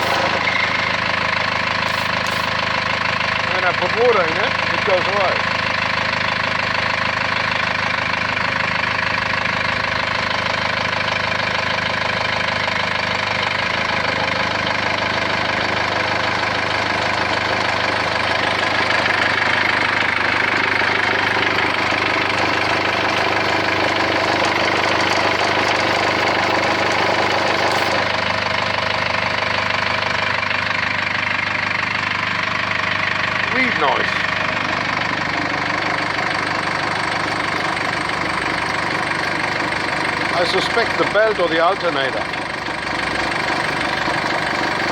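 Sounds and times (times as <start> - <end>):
persistent engine belt noise: 0.0 - 44.9
vehicle engine idling: 0.0 - 44.9.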